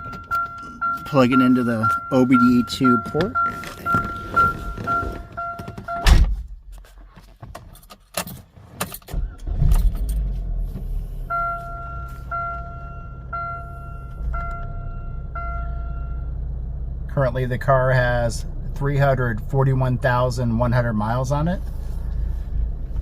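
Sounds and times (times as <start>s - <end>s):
car warning chime pinging: 0.0s - 6.2s, 11.3s - 16.4s
car engine starting and idling: 0.0s - 23.0s.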